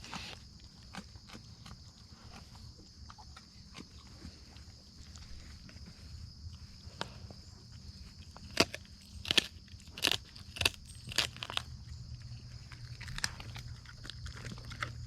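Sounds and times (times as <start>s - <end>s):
dogs chewing meat: 0.0s - 15.0s
bone crunching: 8.2s - 15.0s.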